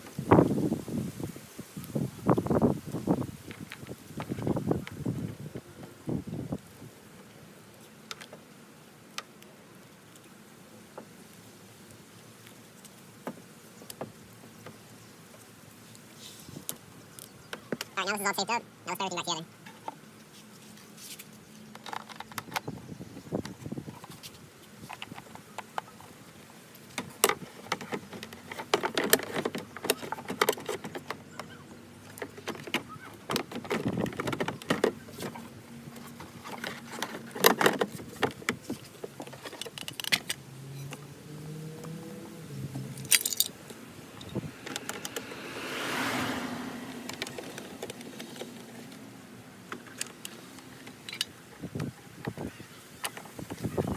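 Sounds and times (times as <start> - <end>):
parts and tools clicking and rattling: 21.1 - 22.8, 23.4 - 41.1, 42.7 - 45.4, 46.9 - 53.9.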